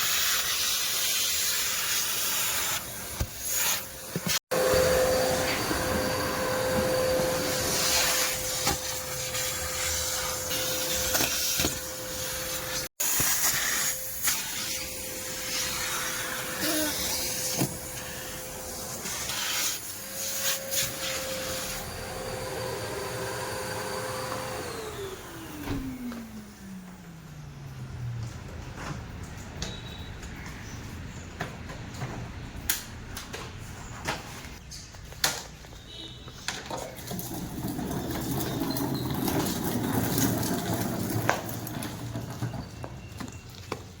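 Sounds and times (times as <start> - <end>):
vacuum cleaner running: 0.0 - 27.8.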